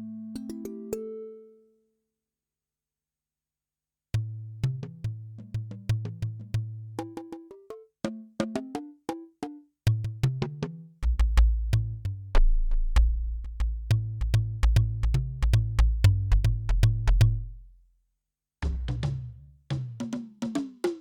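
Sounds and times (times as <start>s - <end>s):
synthesizer bass line: 11.0s - 17.6s.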